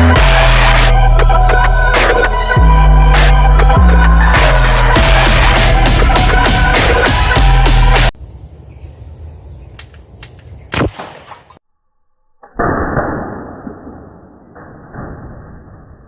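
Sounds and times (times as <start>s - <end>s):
light clicks: 9.7s - 10.5s
marble gun shot: 10.7s - 11.5s, 12.4s - 15.0s.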